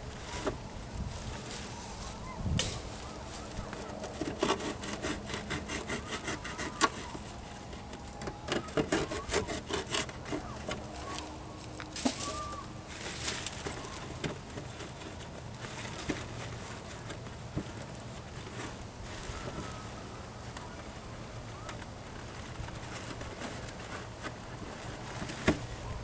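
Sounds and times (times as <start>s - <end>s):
hand sawing wood: 3.3s - 11.3s
rubbing on wood: 3.4s - 11.1s.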